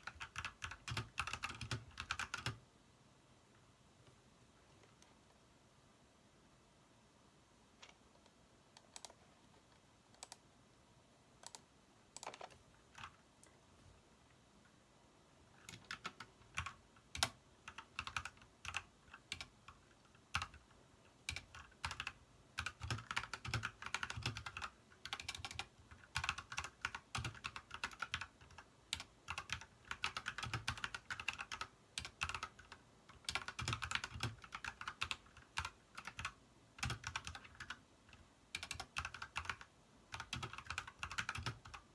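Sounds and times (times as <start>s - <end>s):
mechanical keyboard typing: 0.0s - 2.6s, 8.8s - 9.2s, 10.1s - 10.4s, 11.4s - 13.2s, 15.6s - 41.9s.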